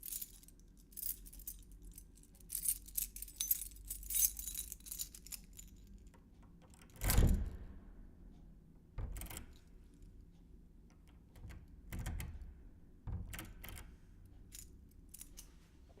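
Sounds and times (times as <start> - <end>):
keys jingling: 0.0 - 6.1, 14.4 - 15.5
keys thumping down: 0.0 - 7.7, 13.1 - 15.6.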